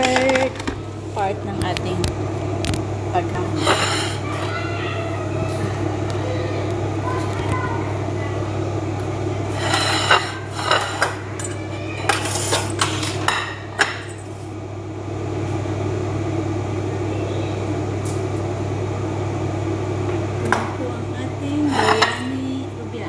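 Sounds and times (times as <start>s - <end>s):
steady low hum: 0.0s - 23.0s
metal cookware clinking: 21.7s - 22.4s.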